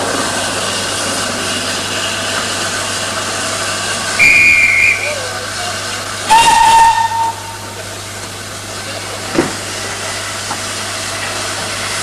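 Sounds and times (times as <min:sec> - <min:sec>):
steam locomotive whistle: 0:04.2 - 0:05.3, 0:06.2 - 0:07.8.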